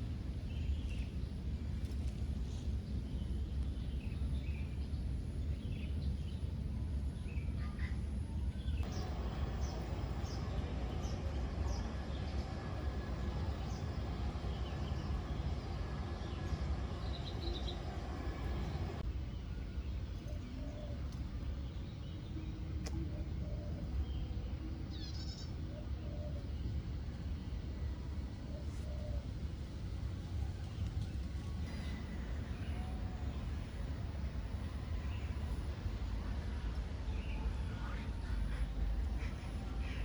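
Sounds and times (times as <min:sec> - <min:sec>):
low rumble: 0:08.1 - 0:40.0.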